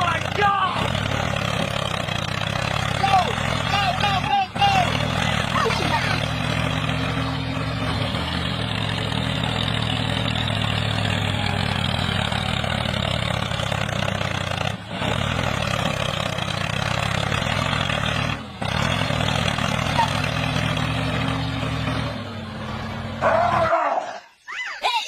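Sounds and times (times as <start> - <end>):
truck engine idling: 0.0 - 23.9.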